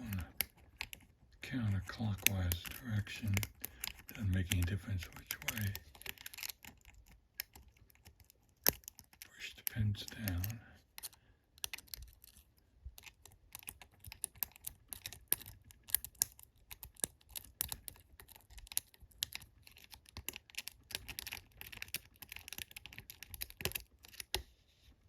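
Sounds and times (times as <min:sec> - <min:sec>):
lock pick clicking and scraping: 0:00.0 - 0:24.4.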